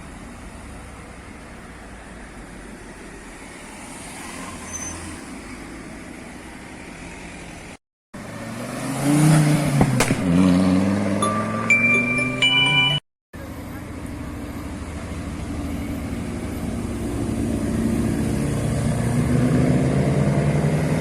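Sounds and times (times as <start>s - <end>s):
car engine revving: 8.2s - 12.4s.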